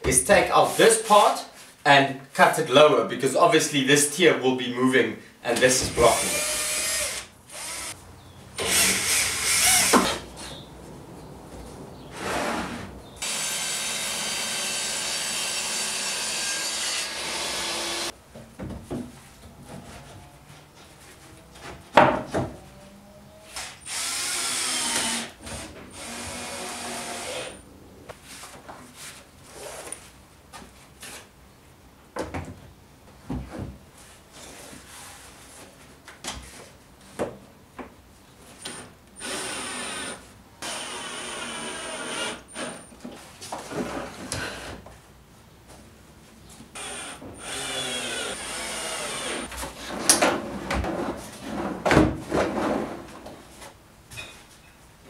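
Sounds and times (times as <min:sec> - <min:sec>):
handheld power tool running: 0:06.2 - 0:08.0, 0:13.2 - 0:18.1, 0:46.8 - 0:49.5.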